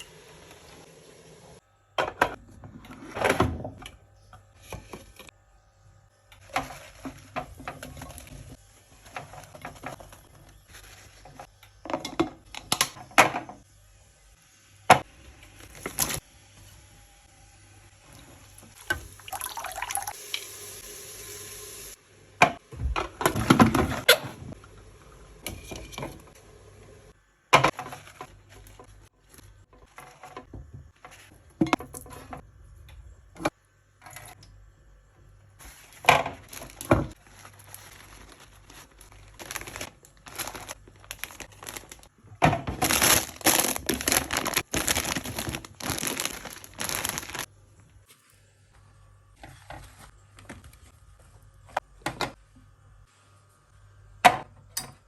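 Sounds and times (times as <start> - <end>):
plastic bags crinkling: 35.6 - 47.5.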